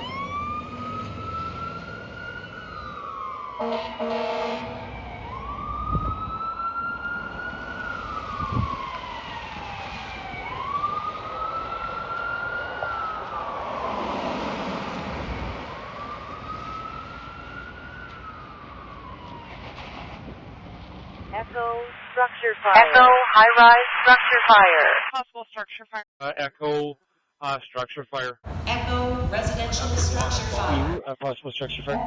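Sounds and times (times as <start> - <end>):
road noise: 0.0 - 4.0, 4.6 - 21.3, 28.4 - 31.0, 31.6 - 32.0
fire truck siren wailing: 0.0 - 21.3, 28.5 - 31.0, 31.7 - 32.0
truck engine: 28.5 - 31.0, 31.6 - 32.0.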